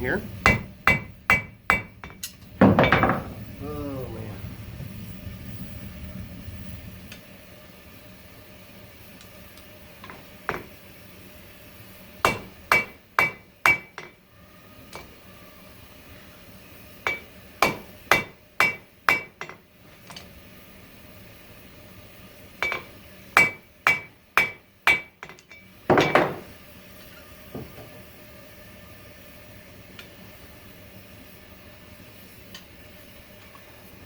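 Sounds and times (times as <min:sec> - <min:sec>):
hammer striking steel on anvil: 0:00.4 - 0:03.3, 0:12.2 - 0:14.2, 0:17.0 - 0:19.6, 0:22.6 - 0:26.5.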